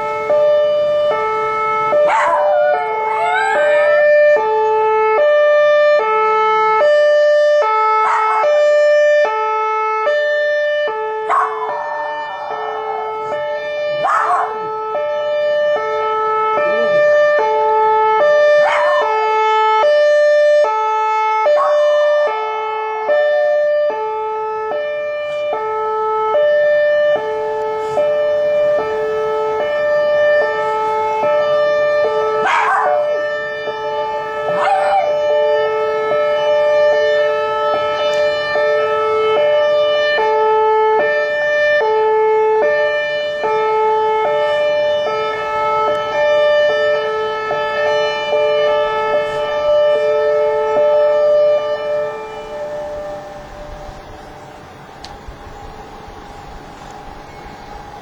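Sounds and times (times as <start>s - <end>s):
two-pitch warning siren: 0.0s - 58.0s
dog howling: 0.8s - 4.9s, 8.0s - 8.6s, 11.0s - 19.2s, 21.5s - 22.0s, 27.5s - 40.3s.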